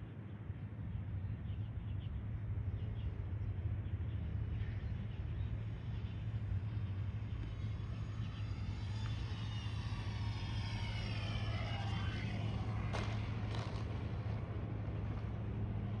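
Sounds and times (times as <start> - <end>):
steady low hum: 0.0 - 16.0
model aircraft motors whining: 4.3 - 16.0.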